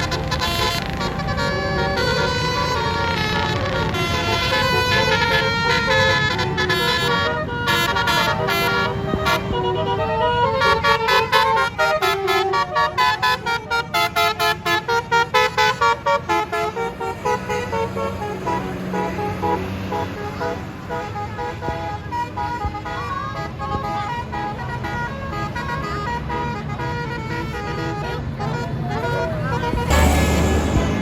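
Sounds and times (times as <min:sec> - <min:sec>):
bus engine rumble: 0:00.0 - 0:31.0
musical air horn tune: 0:00.0 - 0:31.0
short horn toots: 0:27.8 - 0:31.0.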